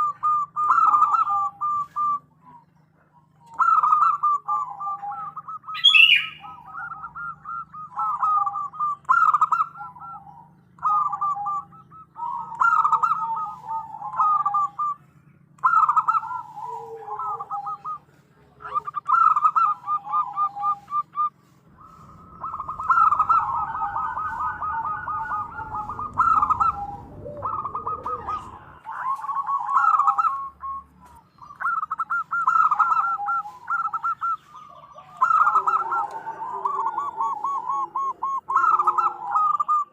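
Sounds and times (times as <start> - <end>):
dove cooing: 0.0 - 39.9
rough low noise: 21.4 - 29.4.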